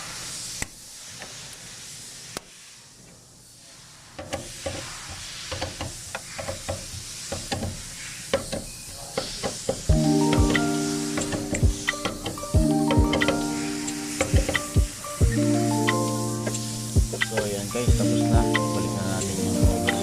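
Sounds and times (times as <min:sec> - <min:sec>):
steady hiss: 0:00.0 - 0:20.0.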